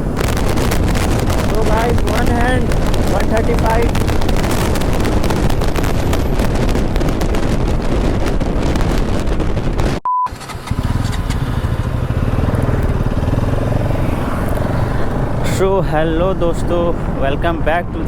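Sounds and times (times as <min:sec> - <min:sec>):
wind buffeting microphone: 0:00.0 - 0:18.0
motorcycle engine at speed: 0:00.2 - 0:15.6
short beep: 0:10.0 - 0:10.4.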